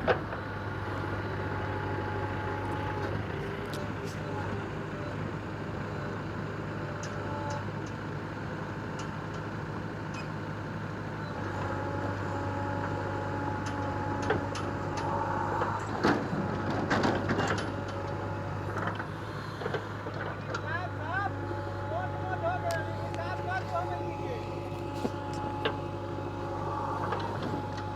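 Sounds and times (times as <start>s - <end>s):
diesel engine running: 0.0s - 27.9s
hydraulic whine: 11.5s - 27.9s.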